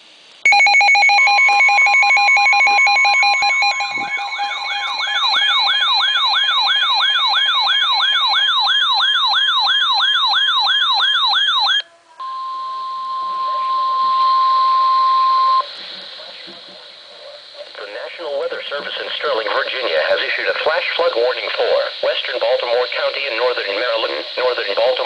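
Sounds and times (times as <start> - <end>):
steady alert tone: 0.5 - 11.0
rapid pulsing electronic beeps: 0.5 - 11.8
warbling siren: 0.5 - 15.7.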